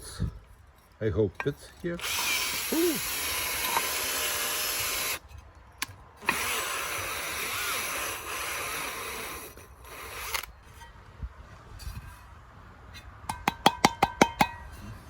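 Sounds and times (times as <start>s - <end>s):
cordless drill scrubbing with brush: 2.0s - 5.2s, 6.2s - 10.5s.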